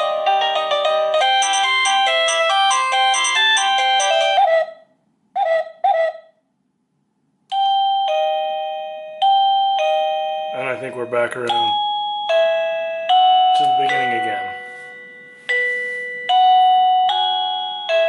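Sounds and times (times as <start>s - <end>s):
electronic doorbell melody: 0.0s - 4.8s, 7.5s - 18.0s
ding-dong doorbell chime: 1.2s - 4.4s, 7.5s - 18.0s.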